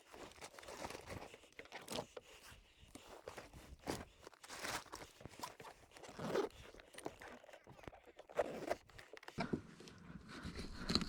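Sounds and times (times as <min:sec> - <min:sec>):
gear rustling and scraping: 0:03.0 - 0:09.4.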